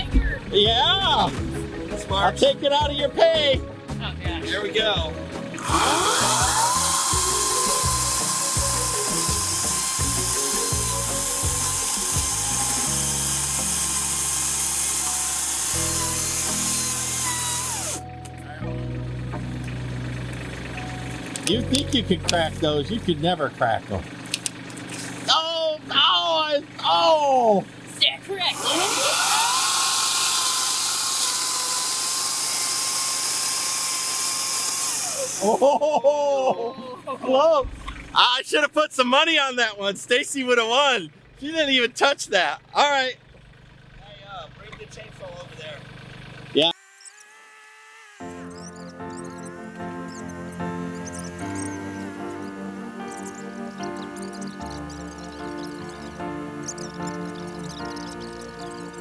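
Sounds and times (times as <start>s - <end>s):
power tool motor whining: 1.4s - 2.3s, 5.6s - 18.1s, 28.4s - 35.7s, 46.5s - 59.0s
chainsaw revving: 1.4s - 2.4s, 5.6s - 18.0s, 28.4s - 35.7s, 46.0s - 59.0s.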